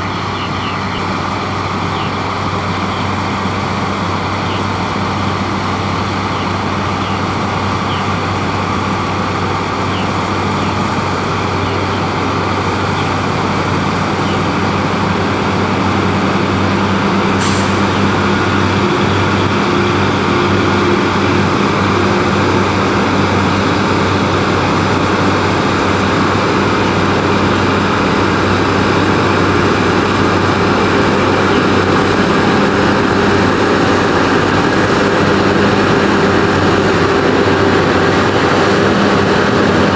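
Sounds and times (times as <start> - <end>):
diesel farm machinery engine drone: 0.0 - 39.9.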